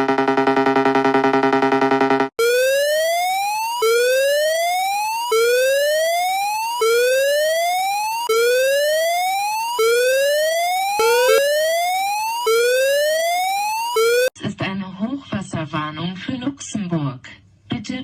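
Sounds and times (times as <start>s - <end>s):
rising whoop siren tone: 2.4s - 14.3s.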